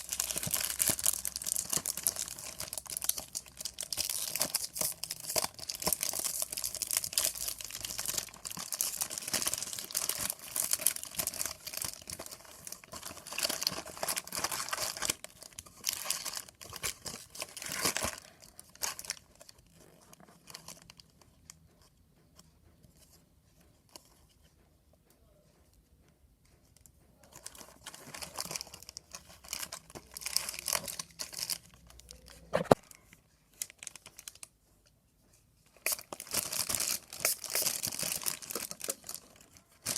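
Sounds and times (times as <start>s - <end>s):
packaging tearing and crinkling: 0.0s - 15.2s, 35.8s - 39.9s.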